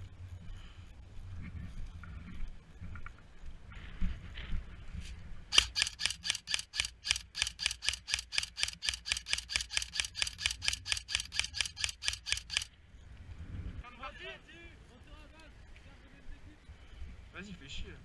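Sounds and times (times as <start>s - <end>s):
airsoft gun firing sharp shots: 5.5s - 12.7s.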